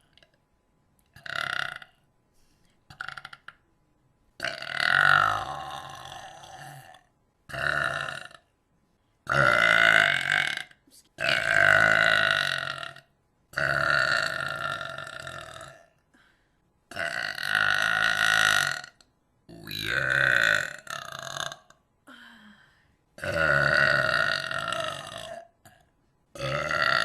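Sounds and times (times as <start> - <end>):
person burping: 1.2 - 2.0, 2.9 - 3.6, 4.4 - 8.5, 9.3 - 16.0, 16.9 - 21.8, 23.2 - 27.0.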